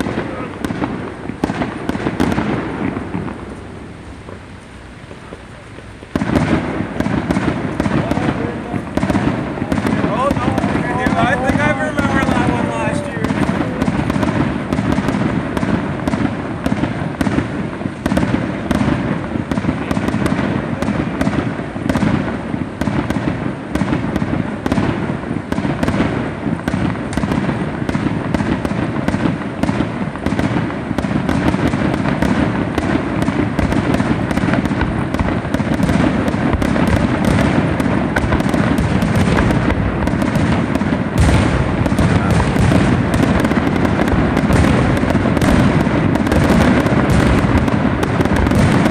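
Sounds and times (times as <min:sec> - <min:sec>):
continuous rumble: 0:00.0 - 0:48.9
fireworks bursts and bangs: 0:00.0 - 0:48.9.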